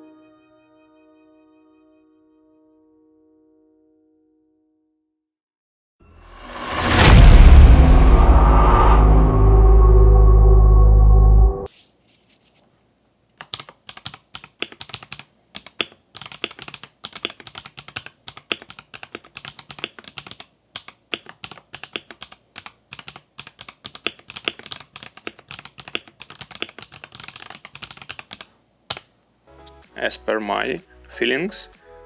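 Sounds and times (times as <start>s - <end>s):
mechanical keyboard typing: 13.4s - 29.1s.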